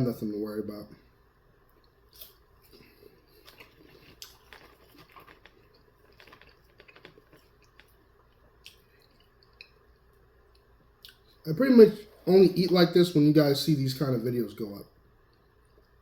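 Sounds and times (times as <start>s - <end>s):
faint close-up chewing: 1.6s - 11.4s.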